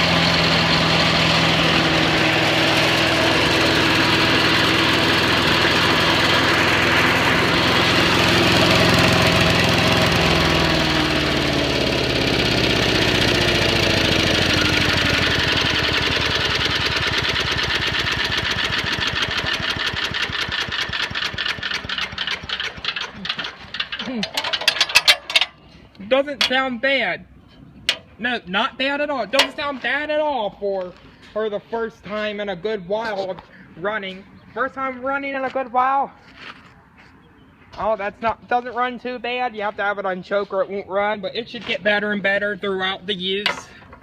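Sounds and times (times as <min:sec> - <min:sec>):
small gasoline engine running: 0:00.0 - 0:25.6.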